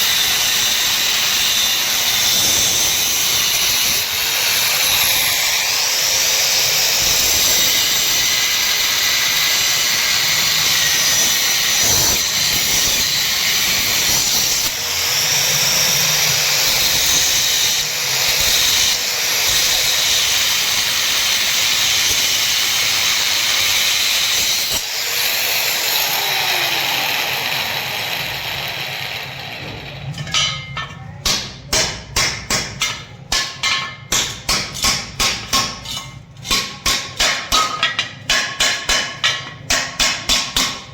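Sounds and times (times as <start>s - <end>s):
arc welding hiss and crackle: 0.0s - 14.9s, 15.9s - 29.4s
chipping hammer striking metal: 29.6s - 40.9s.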